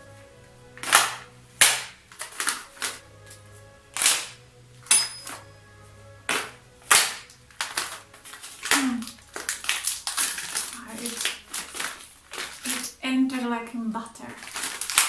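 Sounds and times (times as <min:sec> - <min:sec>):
faint background music: 0:00.0 - 0:15.0
chair parts knocking and snapping: 0:00.8 - 0:03.0, 0:04.0 - 0:05.4, 0:06.3 - 0:12.9, 0:14.4 - 0:15.0.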